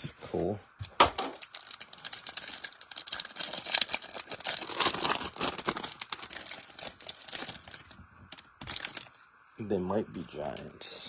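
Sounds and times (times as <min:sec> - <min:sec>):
foil wrappers crinkling and tearing: 0:00.9 - 0:09.3.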